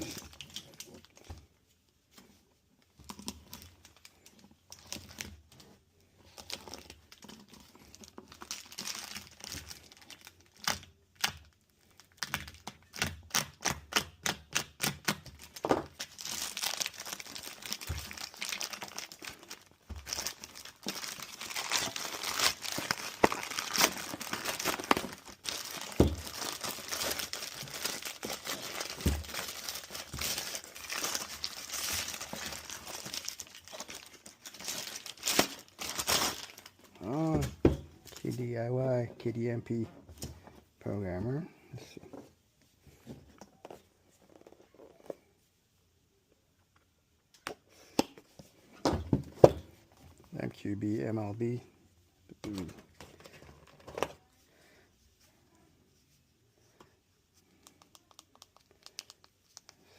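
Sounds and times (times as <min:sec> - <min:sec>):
packaging crinkling: 0:06.2 - 0:37.3, 0:57.5 - 0:59.9
packaging ripping: 0:06.4 - 0:37.3.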